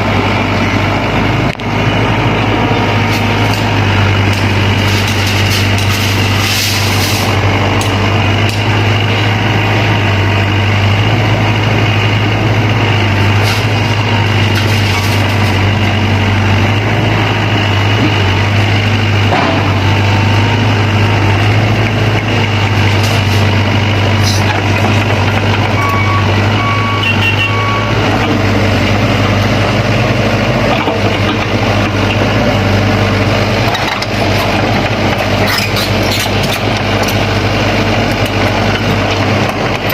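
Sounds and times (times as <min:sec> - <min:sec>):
diesel engines running: 0:00.0 - 0:39.9
reversing alarm beeping: 0:25.7 - 0:28.1.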